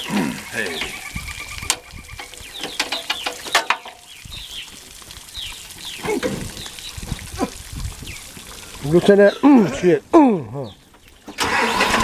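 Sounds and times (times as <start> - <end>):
birds chirping: 0.0 - 11.8.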